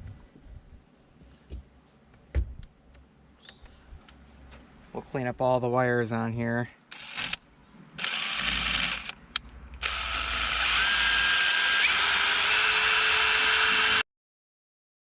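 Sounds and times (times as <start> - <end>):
small power tool running: 6.9 - 7.4, 8.0 - 9.2, 9.8 - 14.0.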